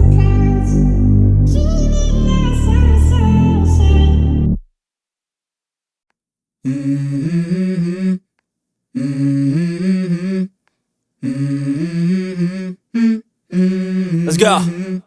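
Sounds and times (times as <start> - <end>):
person humming a melody: 11.2 - 15.0.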